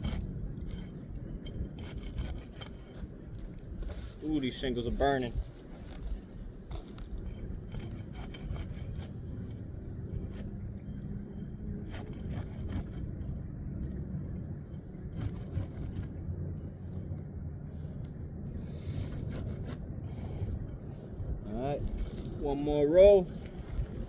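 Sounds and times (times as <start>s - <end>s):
hand tool scraping shingles: 7.7s - 9.4s, 11.9s - 13.1s.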